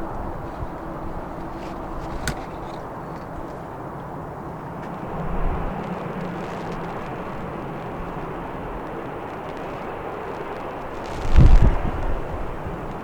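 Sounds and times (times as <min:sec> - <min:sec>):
jet engines rumbling: 0:00.0 - 0:13.0
wind buffeting microphone: 0:00.0 - 0:13.0.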